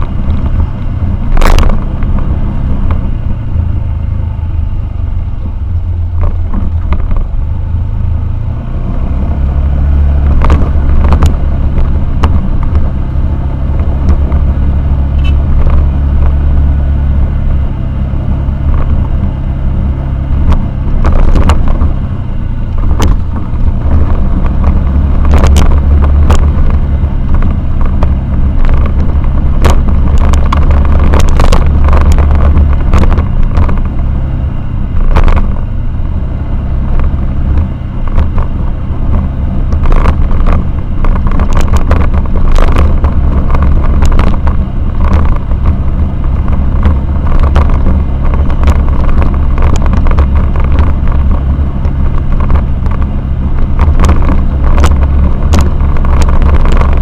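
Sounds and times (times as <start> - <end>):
vehicle engine rumbling: 0.0 - 57.0.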